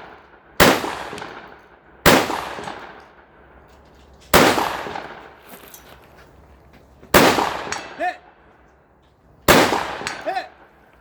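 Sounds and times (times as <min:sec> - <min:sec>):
shotgun shots with echo: 0:00.0 - 0:03.2, 0:04.3 - 0:05.4, 0:07.1 - 0:08.2, 0:09.5 - 0:10.7.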